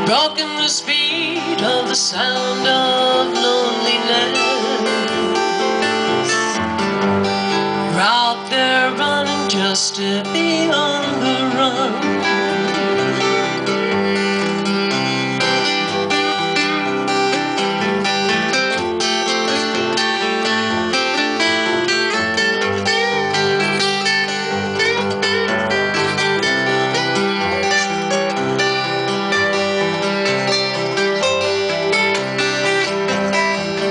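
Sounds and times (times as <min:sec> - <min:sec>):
acoustic guitars strumming: 0:00.0 - 0:33.9
bass guitar: 0:00.0 - 0:33.9.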